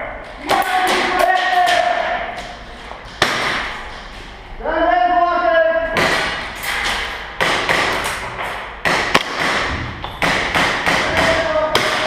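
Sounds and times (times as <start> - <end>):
airsoft gun shots echoing: 8.8 - 12.0.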